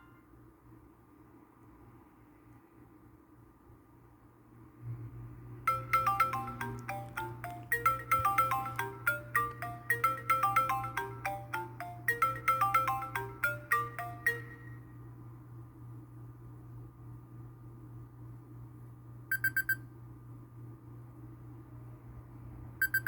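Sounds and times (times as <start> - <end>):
low steady hum: 0.0 - 23.0
phone ringtone melody: 5.7 - 14.9.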